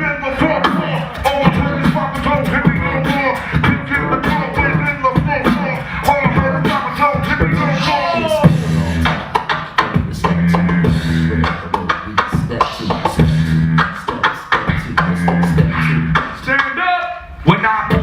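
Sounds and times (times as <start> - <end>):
beatboxing drum hits: 0.4 - 18.0
hummed bass note: 8.4 - 9.2.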